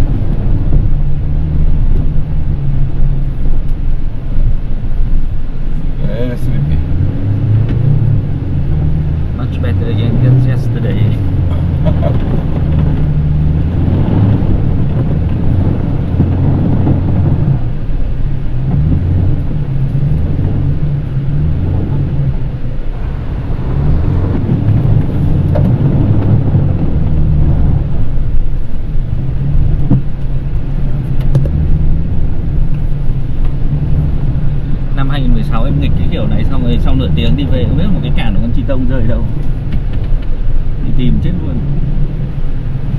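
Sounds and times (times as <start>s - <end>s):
low rumble from vehicle body: 22.8s - 34.7s
diesel engine revving: 22.9s - 29.8s.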